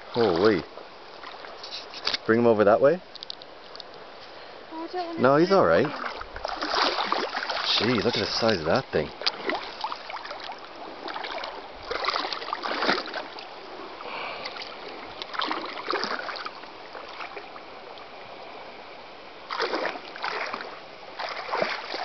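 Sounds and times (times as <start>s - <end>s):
water rushing: 0.0s - 1.7s, 4.0s - 22.0s
water splashing in shallows: 0.0s - 2.2s, 5.6s - 18.4s, 19.4s - 22.0s.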